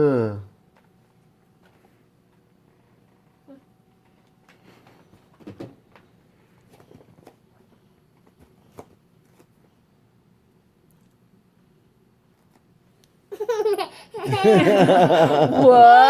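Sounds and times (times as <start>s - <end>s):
faint knocks and handling noises: 0.7s - 9.8s.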